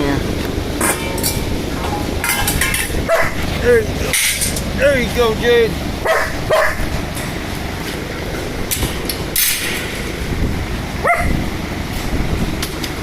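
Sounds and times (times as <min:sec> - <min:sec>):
low background rumble: 0:00.0 - 0:13.0
noisy clatters: 0:00.4 - 0:05.6, 0:06.2 - 0:13.0
dog whining: 0:11.0 - 0:11.4.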